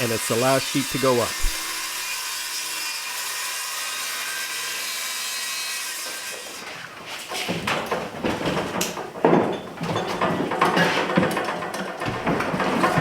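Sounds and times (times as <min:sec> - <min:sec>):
circular saw cutting: 0:00.0 - 0:06.6
rustling: 0:00.8 - 0:02.1
uneven knocks: 0:01.3 - 0:02.0, 0:12.0 - 0:13.0.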